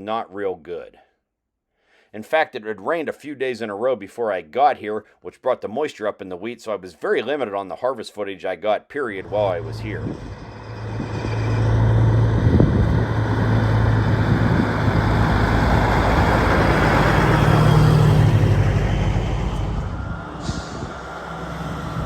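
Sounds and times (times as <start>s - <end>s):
diesel engine running: 9.2s - 22.0s.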